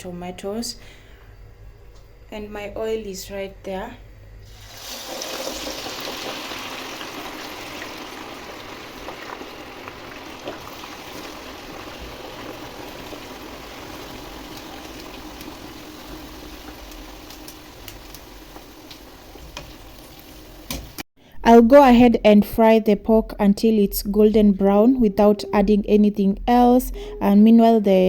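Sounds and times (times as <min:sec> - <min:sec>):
food sizzling in hot oil: 0:04.4 - 0:21.0.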